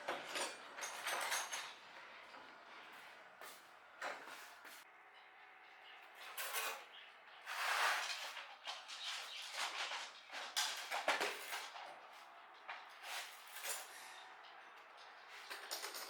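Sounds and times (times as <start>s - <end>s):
scraping and rubbing of parts: 6.3s - 12.1s.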